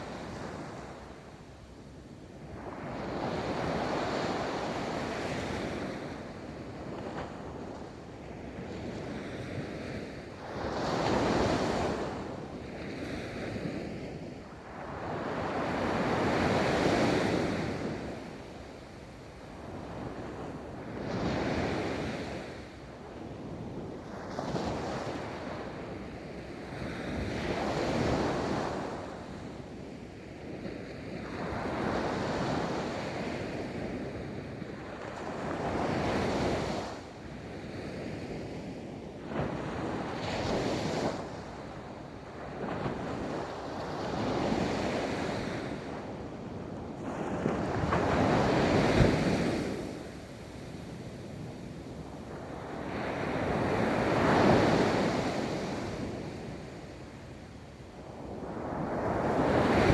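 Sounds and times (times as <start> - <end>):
wind: 0.0 - 59.9
ocean waves breaking on beach: 58.2 - 59.9.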